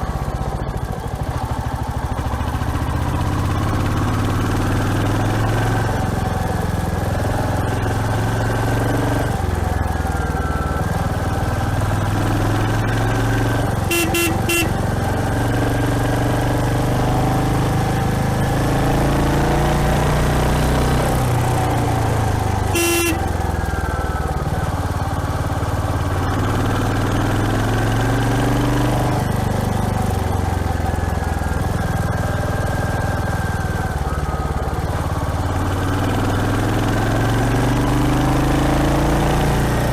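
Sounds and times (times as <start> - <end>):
motorcycle engine running: 0.0 - 39.9
horn toots: 13.4 - 14.8, 22.6 - 23.7.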